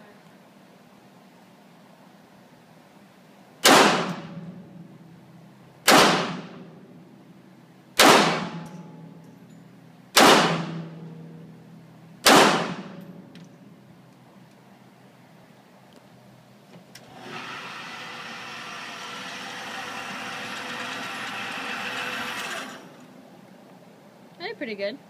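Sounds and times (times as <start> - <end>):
pistol shots with echo: 3.6 - 4.3, 5.8 - 6.6, 8.0 - 8.7, 10.2 - 10.9, 12.2 - 13.0.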